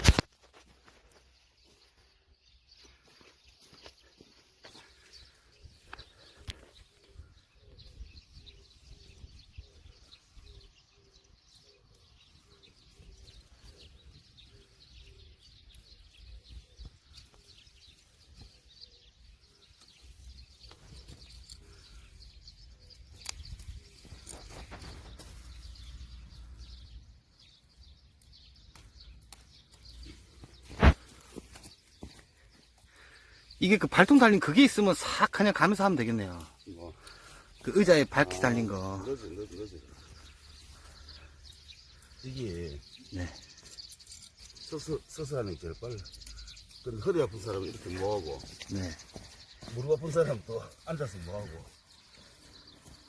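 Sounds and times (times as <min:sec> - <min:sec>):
sharp clicks: 0:22.9 - 0:24.7
bird repeating low note: 0:35.6 - 0:52.8.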